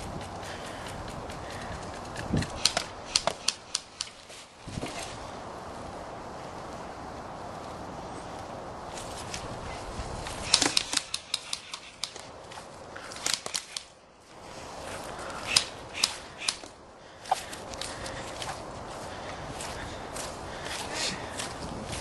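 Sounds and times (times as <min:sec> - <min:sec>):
wind rumble on microphone: 0:00.0 - 0:03.1, 0:04.6 - 0:10.9, 0:14.4 - 0:22.0
airsoft guns firing: 0:02.5 - 0:04.1, 0:10.4 - 0:12.2, 0:15.4 - 0:16.7.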